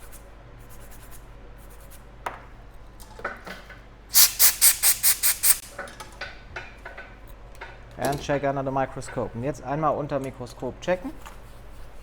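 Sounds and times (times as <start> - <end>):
scrubbing rubbing strokes: 4.2 - 5.6.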